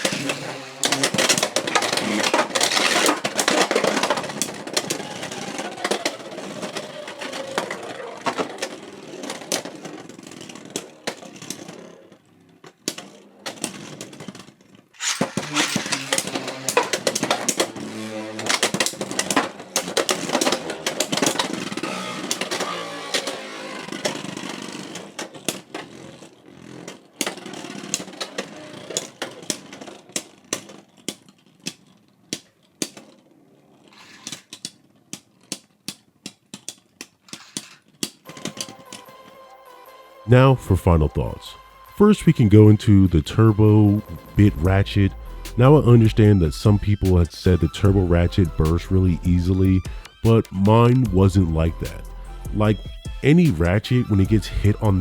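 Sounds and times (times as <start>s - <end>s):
spinning tops whirring: 0.0s - 14.3s, 14.9s - 30.8s, 32.8s - 34.9s, 37.2s - 40.2s
spinning tops clashing: 15.0s - 18.8s.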